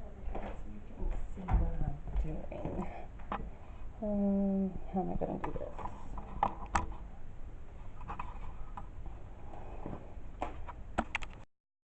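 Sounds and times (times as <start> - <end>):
low background hum: 0.0 - 11.5.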